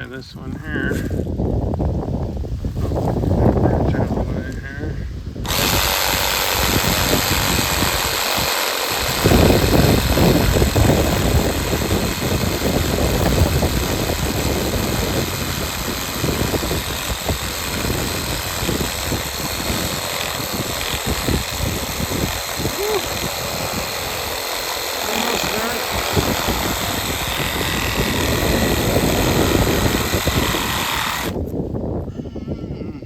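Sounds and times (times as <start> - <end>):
reciprocating saw cutting wood: 5.4 - 31.6.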